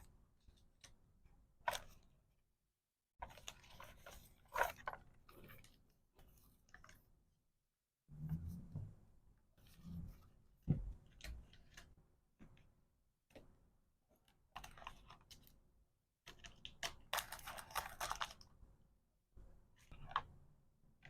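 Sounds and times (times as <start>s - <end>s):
plastic items clicking and tapping: 16.3s - 18.4s
packaging crinkling: 17.2s - 18.4s.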